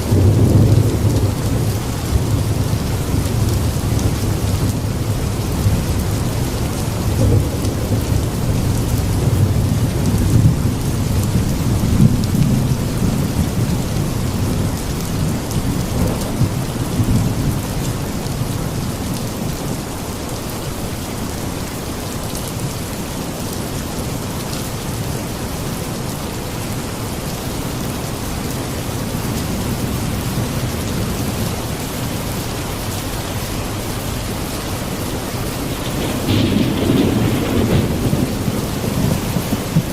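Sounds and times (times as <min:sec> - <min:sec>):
rolling thunder rumble: 0:00.0 - 0:19.5, 0:28.5 - 0:39.9
heavy rain: 0:00.0 - 0:39.9.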